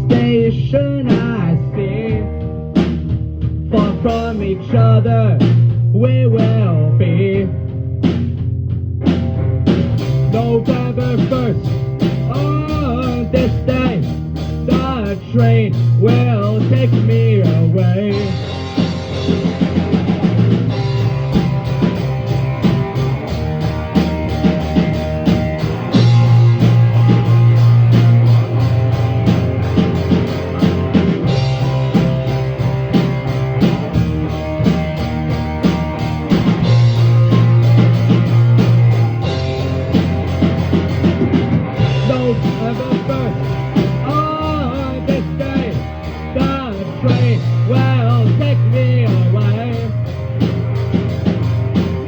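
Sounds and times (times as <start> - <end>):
rock band playing: 0.0 - 52.0
lead guitar bending notes: 6.6 - 52.0.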